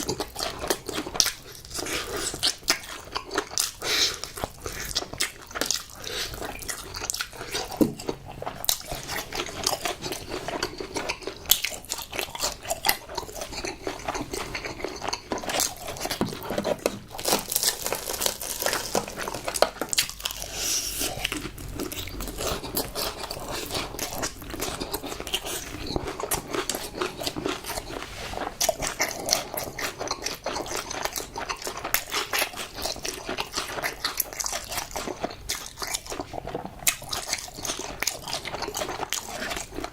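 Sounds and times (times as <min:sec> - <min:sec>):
chewing crispy fried chicken: 0:00.0 - 0:39.9.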